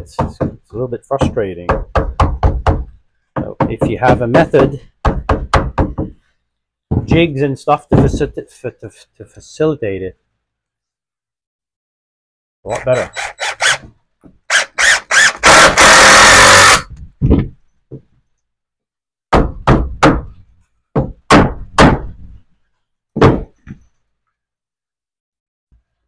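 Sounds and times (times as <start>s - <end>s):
wooden knocks and thunks: 0.0s - 0.6s, 1.2s - 6.2s, 6.9s - 8.3s, 16.9s - 18.2s, 19.3s - 22.4s, 23.2s - 23.9s.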